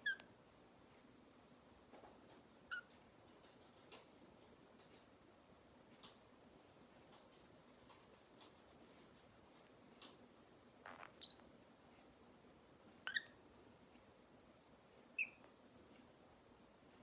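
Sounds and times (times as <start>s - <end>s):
parrot chirping: 0.0s - 0.3s, 2.7s - 3.0s, 10.8s - 11.5s, 13.0s - 13.4s, 15.2s - 15.4s
soft rustle: 0.2s - 17.0s.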